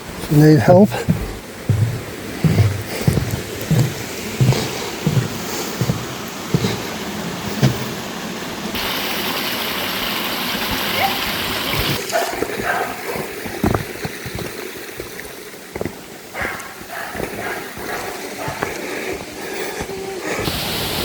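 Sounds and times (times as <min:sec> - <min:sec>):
stream water splashing: 0:00.0 - 0:21.0
low thumps: 0:00.9 - 0:08.1.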